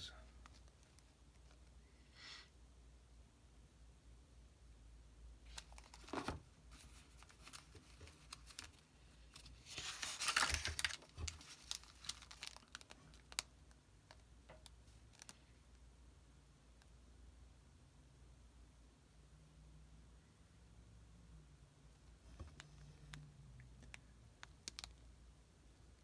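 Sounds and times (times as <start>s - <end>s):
paper pages rustling: 5.5s - 13.0s.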